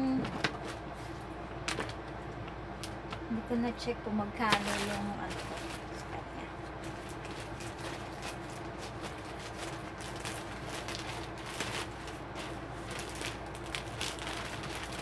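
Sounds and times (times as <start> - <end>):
packaging rustling and crackling: 0.0 - 2.2, 4.4 - 15.0
steady low hum: 0.0 - 15.0.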